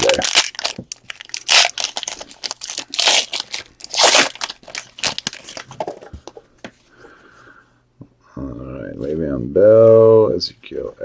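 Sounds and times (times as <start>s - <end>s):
card pack wrapper tearing: 0.0s - 5.7s.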